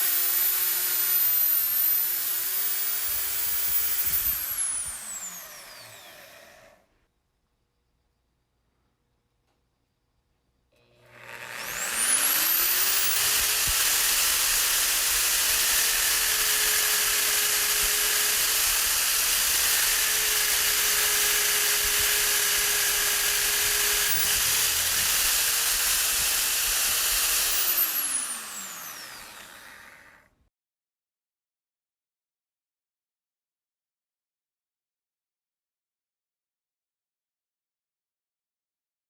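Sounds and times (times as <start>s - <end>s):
electric drill motor whining: 0.0s - 6.9s, 10.8s - 30.3s.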